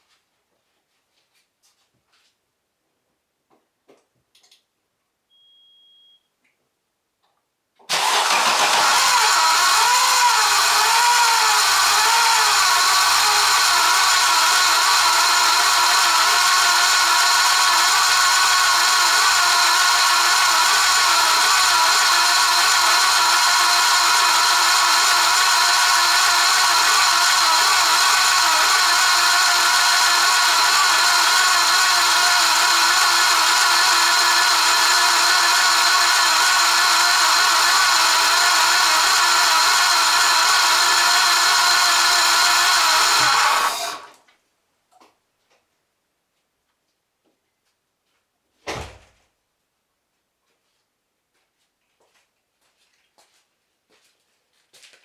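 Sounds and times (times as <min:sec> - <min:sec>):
car engine idling: 0:07.9 - 0:44.1
harsh mechanical whine: 0:07.9 - 0:44.1.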